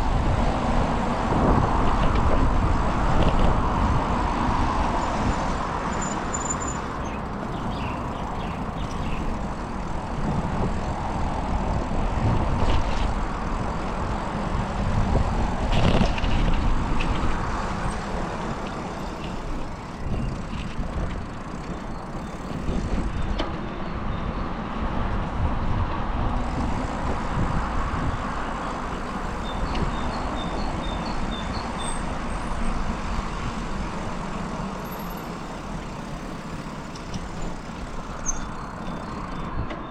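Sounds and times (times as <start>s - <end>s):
road traffic rumble: 0.0s - 39.9s.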